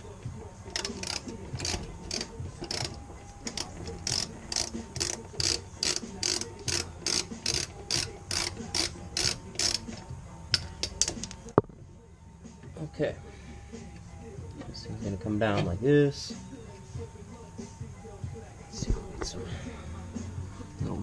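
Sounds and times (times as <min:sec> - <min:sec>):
ratchet wrench clicking: 0:00.7 - 0:11.4.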